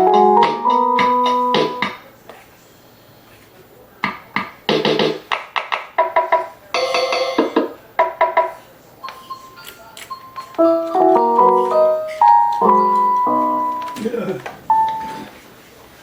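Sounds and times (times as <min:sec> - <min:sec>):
electronic keyboard notes and chords: 0:00.0 - 0:01.9, 0:10.6 - 0:14.1.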